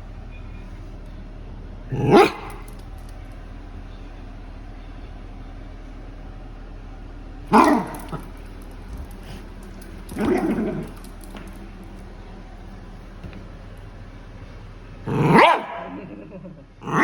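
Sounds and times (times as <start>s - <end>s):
dog barking: 1.9s - 2.8s, 7.5s - 8.4s, 10.2s - 11.0s, 15.1s - 16.0s.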